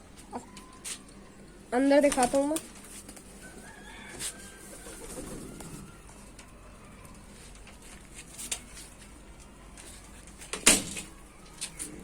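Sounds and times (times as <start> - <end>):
pigeons cooing: 4.6 - 6.1.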